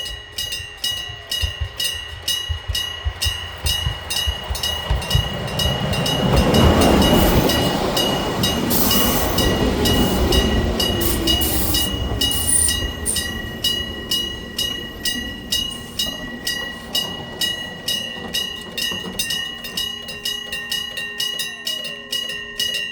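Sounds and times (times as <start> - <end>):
electric train passing: 0.0 - 22.9
level crossing gong bell: 0.0 - 22.9
train whine: 0.0 - 22.9
high squeal: 7.1 - 17.6.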